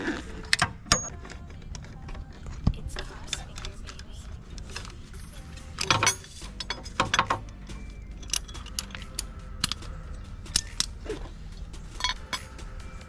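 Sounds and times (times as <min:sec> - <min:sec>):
metal tools clinking on engine: 0:02.9 - 0:13.0.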